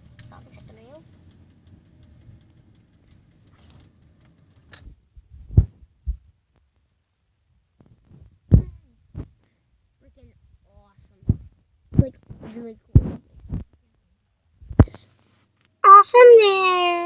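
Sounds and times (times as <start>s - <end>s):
hiss with rapid rattling clicks: 0.0s - 4.8s.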